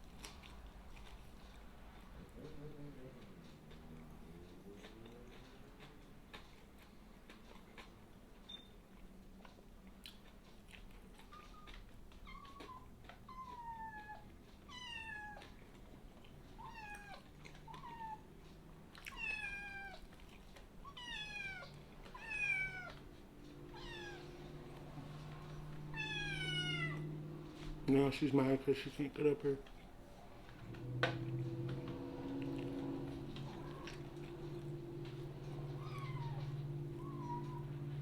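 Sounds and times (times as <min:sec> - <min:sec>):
kitten meowing: 0:12.2 - 0:15.4, 0:16.6 - 0:18.2, 0:19.1 - 0:20.0, 0:20.8 - 0:23.0, 0:23.7 - 0:24.4, 0:25.9 - 0:27.1, 0:35.6 - 0:37.9.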